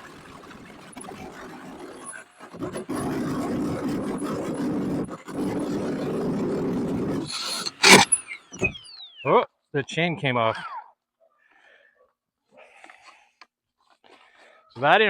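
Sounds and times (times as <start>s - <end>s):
electric chainsaw cutting boat hull: 0.4s - 8.2s.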